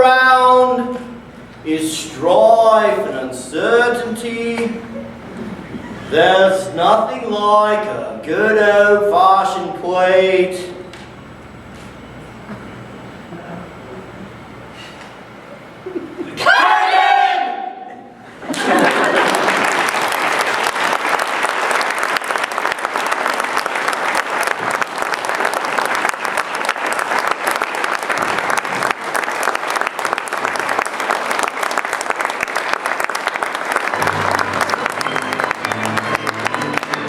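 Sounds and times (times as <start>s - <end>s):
person speaking: 6.1s - 10.8s
audience applauding: 18.4s - 37.0s.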